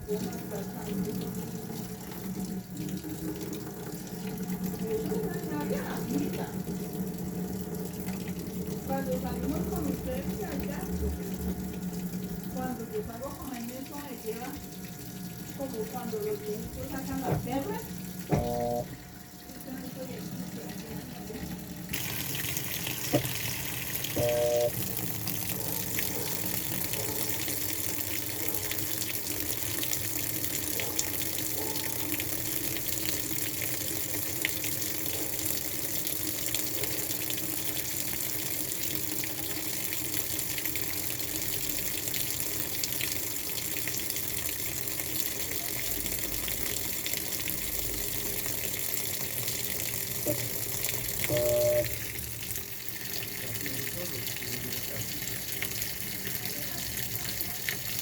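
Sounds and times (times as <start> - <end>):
water running: 0.0 - 58.0
brief tone: 18.3 - 19.0, 24.2 - 24.7, 51.3 - 52.0.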